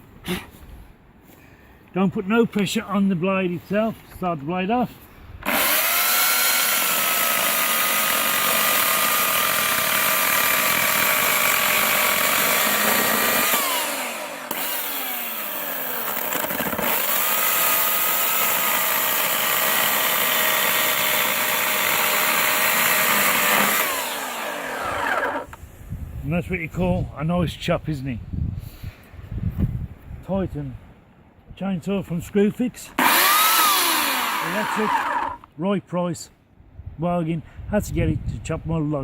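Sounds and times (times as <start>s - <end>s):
electric chainsaw cutting log: 5.4s - 25.6s, 33.0s - 35.5s.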